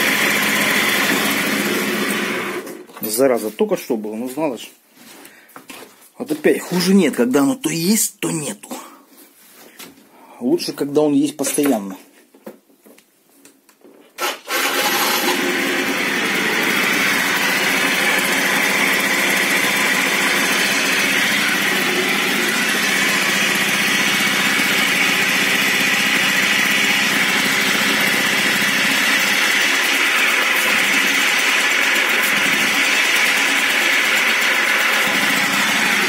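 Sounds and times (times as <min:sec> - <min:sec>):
scooter engine starting and running: 0:00.0 - 0:03.0, 0:14.2 - 0:36.0.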